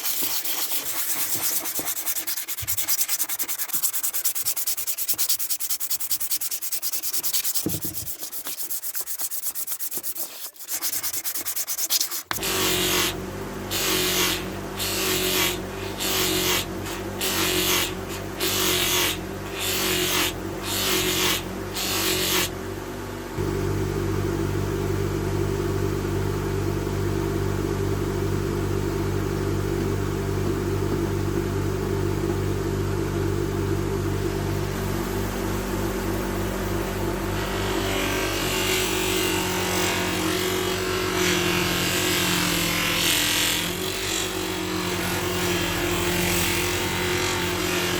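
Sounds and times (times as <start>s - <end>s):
metal hand-sanding strokes: 0.0s - 22.5s, 37.6s - 47.9s
grinding hiss: 11.9s - 22.5s
motor humming: 12.2s - 47.9s.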